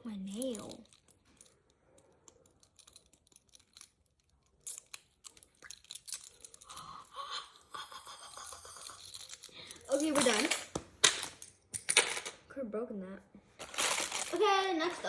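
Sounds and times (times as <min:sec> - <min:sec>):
plastic film crackling: 0:13.6 - 0:15.0.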